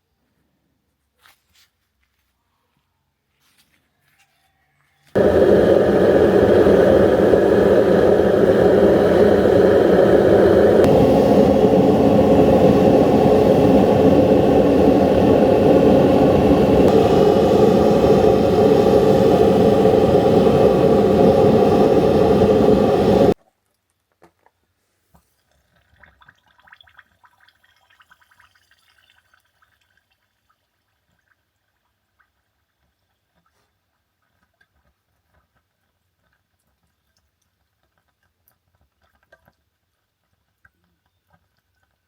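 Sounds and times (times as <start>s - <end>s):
loud steady machine noise: 5.2s - 23.4s.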